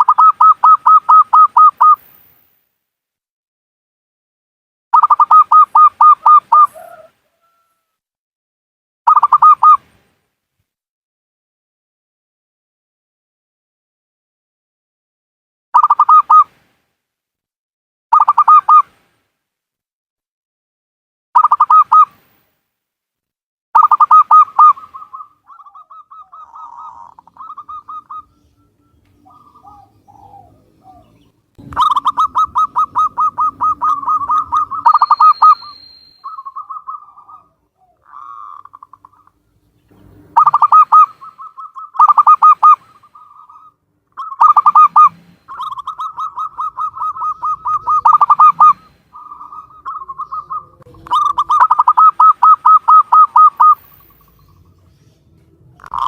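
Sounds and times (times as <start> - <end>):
dove cooing: 0.0 - 2.0, 5.0 - 7.9, 23.8 - 54.6.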